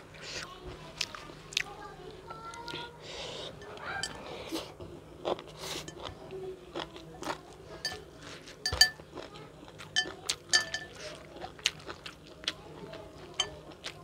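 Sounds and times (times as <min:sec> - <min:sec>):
person chewing and crunching: 0:03.7 - 0:14.0.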